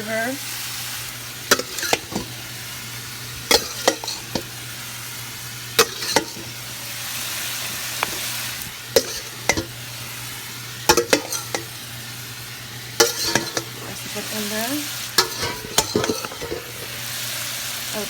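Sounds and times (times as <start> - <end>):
meat sizzling in oil: 0.0 - 18.0
utensil knocking against pan: 10.9 - 11.6.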